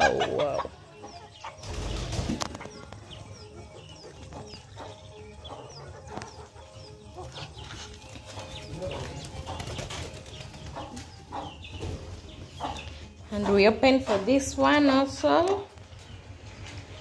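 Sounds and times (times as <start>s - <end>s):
chickens clucking: 0.0s - 17.0s.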